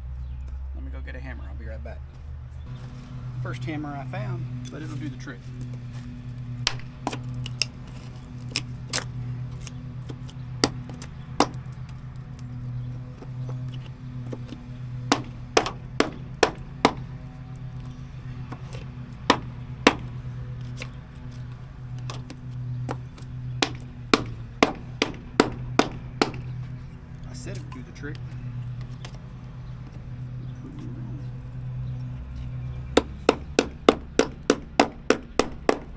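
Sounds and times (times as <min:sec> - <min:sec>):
hammer blows: 0:06.7 - 0:07.6, 0:10.6 - 0:11.7, 0:13.5 - 0:26.9, 0:32.4 - 0:35.9.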